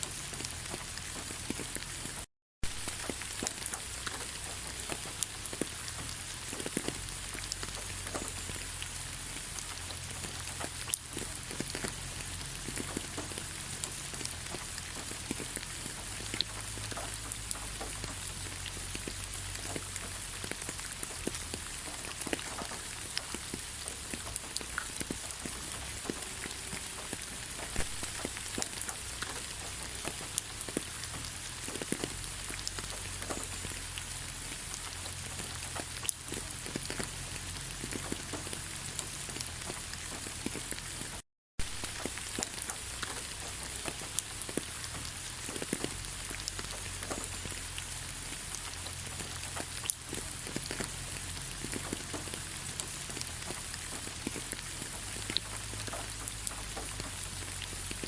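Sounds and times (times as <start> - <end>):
light rain hissing: 0.0 - 58.0
raindrops tapping: 0.1 - 58.0.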